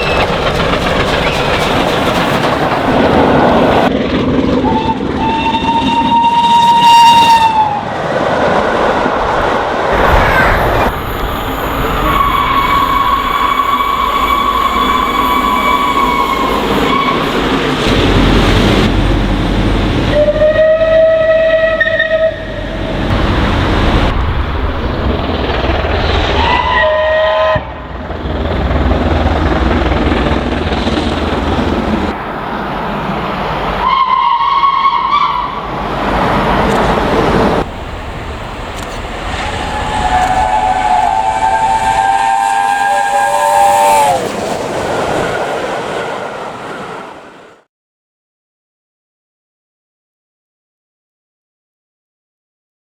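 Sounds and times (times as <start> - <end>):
rumble of running train: 0.0 - 47.7
steam locomotive whistle: 4.6 - 7.9, 11.4 - 17.4, 20.1 - 22.8, 26.4 - 27.8, 33.8 - 35.6, 39.5 - 44.4.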